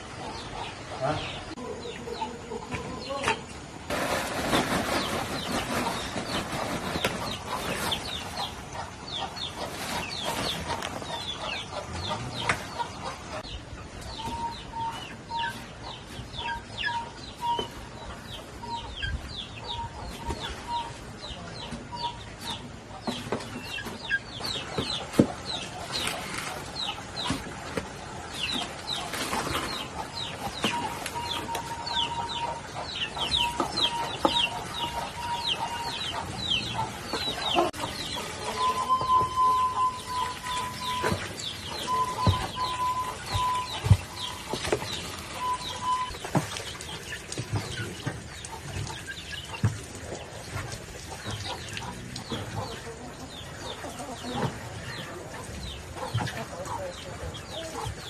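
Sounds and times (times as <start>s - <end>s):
chickens clucking and peeping: 0.0s - 58.0s.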